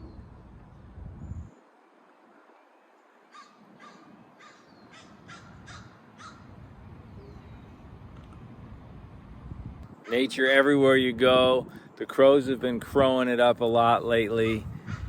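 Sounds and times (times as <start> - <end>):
crow cawing: 3.3 - 6.5.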